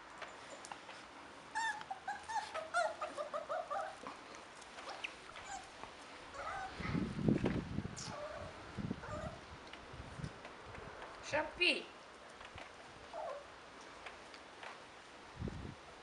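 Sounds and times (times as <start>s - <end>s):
rustling: 0.0s - 8.2s
puppies whimpering: 1.5s - 4.0s, 4.8s - 5.7s, 6.4s - 6.8s.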